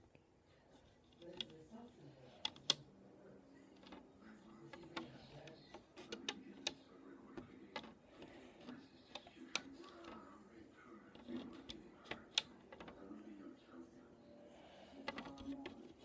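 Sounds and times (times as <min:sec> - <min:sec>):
sharp plastic clicks and taps: 0:07.4 - 0:10.2, 0:11.2 - 0:13.0.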